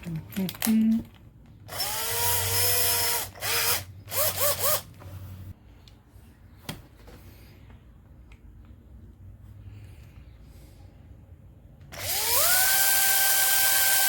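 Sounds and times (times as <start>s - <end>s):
battery drill motor whine: 1.7s - 4.8s, 11.9s - 14.0s.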